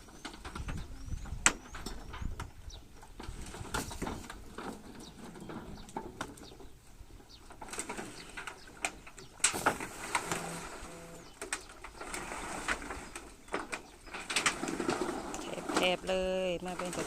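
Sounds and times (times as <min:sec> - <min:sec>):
dove cooing: 0:10.2 - 0:11.4.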